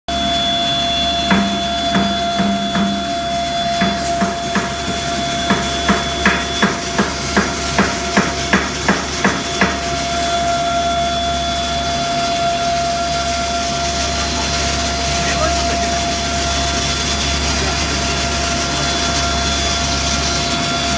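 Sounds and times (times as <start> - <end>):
grinding mill humming and whining: 0.1 - 20.9
sharp knocks: 1.3 - 9.9.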